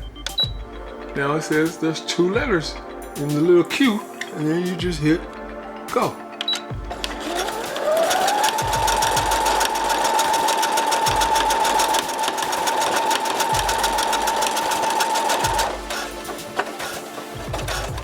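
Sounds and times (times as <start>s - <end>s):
sewing machine stitching: 6.9s - 18.0s.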